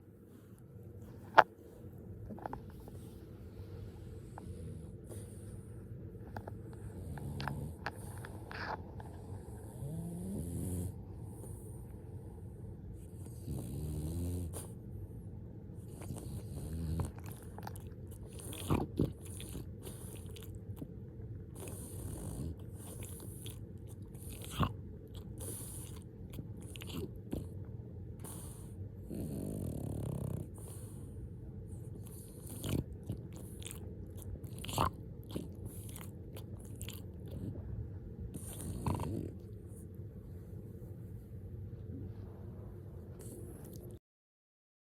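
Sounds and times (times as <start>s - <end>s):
dog snoring: 4.1s - 12.3s, 13.0s - 14.8s, 15.8s - 20.9s, 21.5s - 27.6s, 28.2s - 39.8s.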